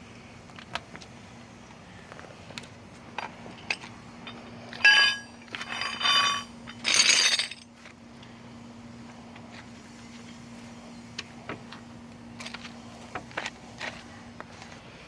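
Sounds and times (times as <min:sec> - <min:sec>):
faint steady hum: 0:00.0 - 0:15.0
metal tools clinking: 0:03.2 - 0:07.7
ringing metal strikes: 0:04.8 - 0:05.4.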